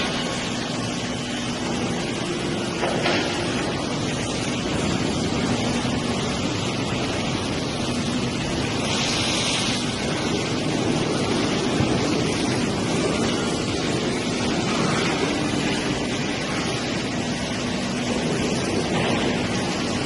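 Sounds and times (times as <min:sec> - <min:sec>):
plate rolling machine hum: 0:00.0 - 0:20.0
hiss: 0:08.6 - 0:10.6.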